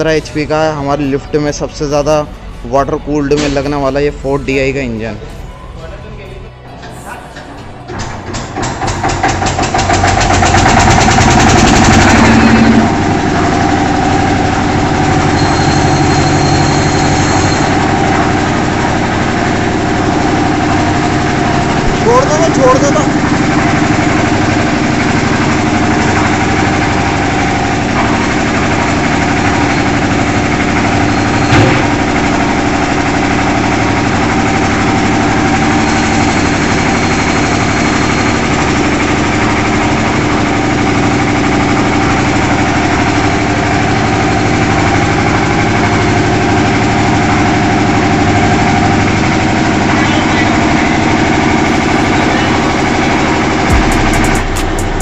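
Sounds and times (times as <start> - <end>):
engine running steadily: 0.0 - 55.0
sharp knock: 31.5 - 32.0, 53.7 - 55.0.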